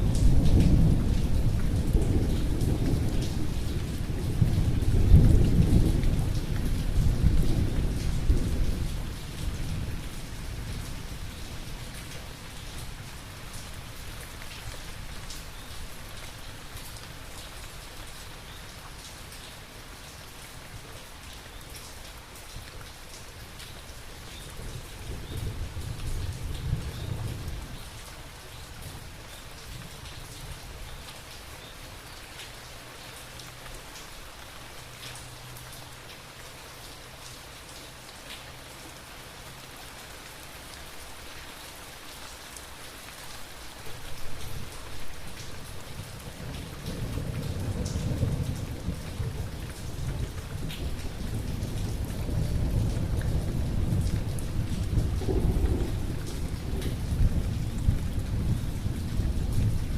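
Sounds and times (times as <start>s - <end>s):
steady rain with dripping drops: 0.0s - 59.9s
thunder rumbling: 46.3s - 59.9s.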